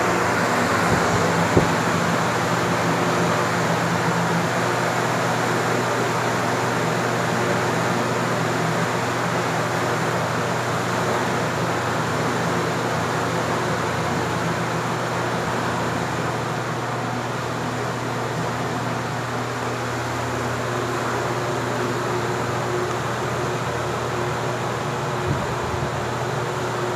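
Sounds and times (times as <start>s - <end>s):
low motor hum: 0.0s - 2.4s
fan air rushing: 0.0s - 26.9s.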